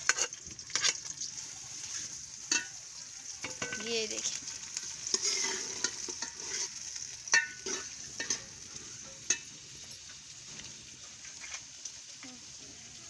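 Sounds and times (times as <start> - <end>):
onions sizzling in a pot: 0.0 - 13.0.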